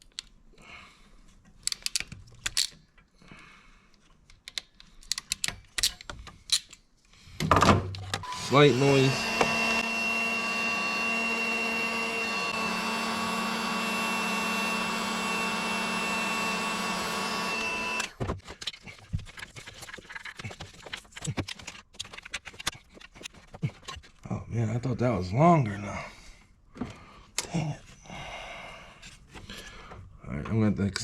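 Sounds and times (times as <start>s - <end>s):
small electric motor whining: 8.2s - 18.1s.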